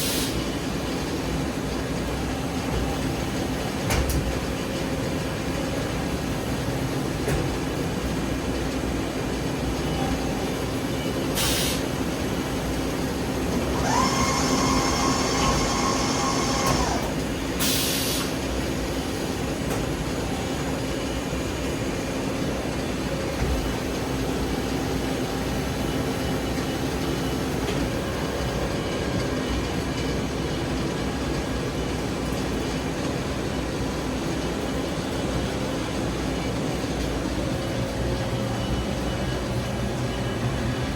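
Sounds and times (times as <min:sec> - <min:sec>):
machining center mechanical drone: 0:00.0 - 0:40.9
high machine whine: 0:09.2 - 0:40.9.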